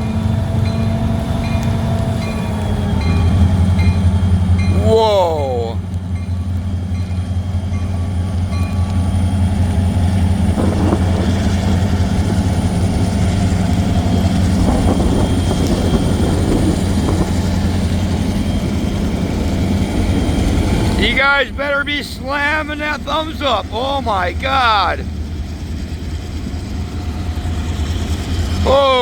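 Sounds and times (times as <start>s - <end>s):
locomotive engine drone: 0.0s - 29.0s
rough rushing noise: 10.5s - 19.1s.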